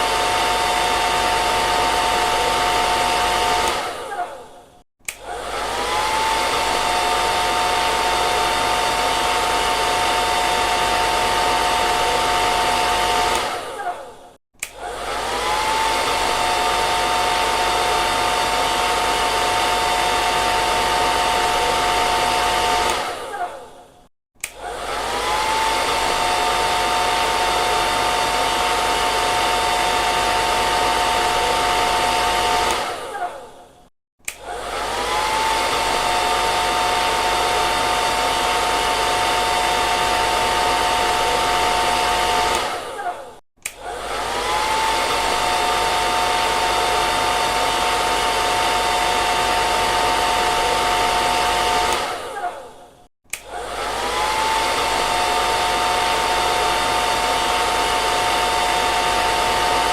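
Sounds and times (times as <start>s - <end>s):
hair dryer blowing: 0.0s - 33.6s, 34.2s - 59.9s.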